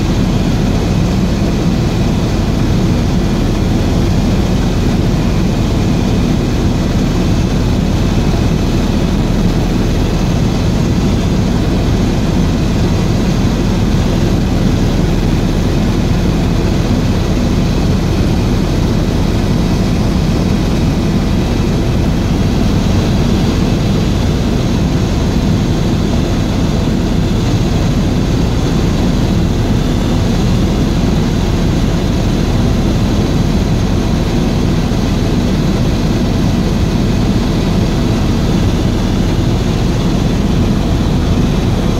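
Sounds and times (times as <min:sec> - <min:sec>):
helicopter drone: 0:00.0 - 0:41.9.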